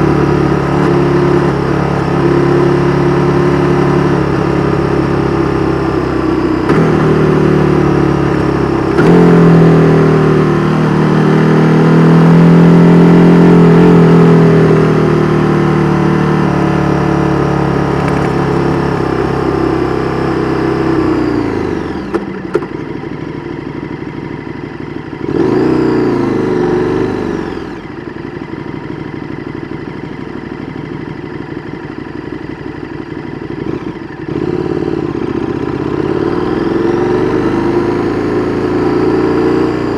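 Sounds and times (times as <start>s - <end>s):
motorcycle engine revving: 0.0s - 29.0s, 33.5s - 39.9s
motorcycle engine accelerating: 0.0s - 30.2s, 33.4s - 39.9s.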